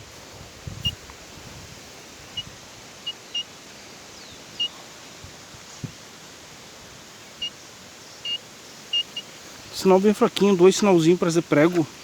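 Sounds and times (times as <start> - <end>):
metal detector beeps: 8.3 - 9.3.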